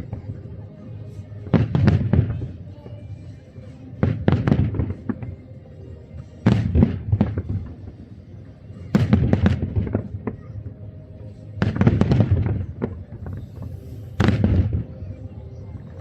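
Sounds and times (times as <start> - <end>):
fireworks bangs: 11.6 - 15.0.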